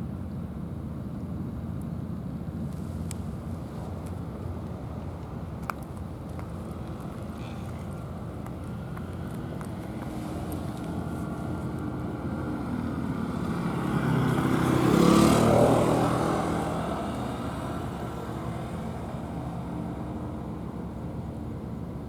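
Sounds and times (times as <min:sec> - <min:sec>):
vehicle engine passing by: 0:09.2 - 0:21.4.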